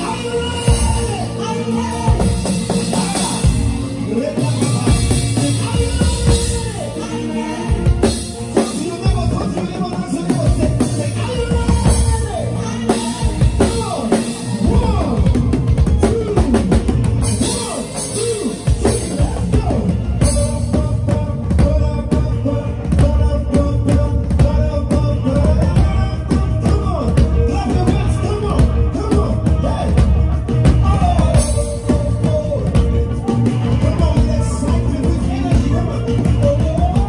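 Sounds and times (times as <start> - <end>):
drum kit: 0.0 - 37.0
heavy bass: 0.0 - 37.0
live band playing upbeat groove: 0.0 - 37.0.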